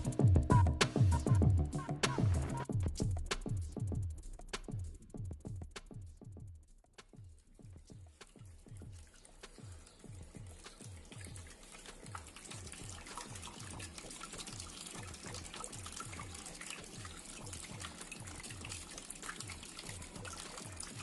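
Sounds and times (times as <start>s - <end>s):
water trickling and splashing: 7.2s - 21.0s.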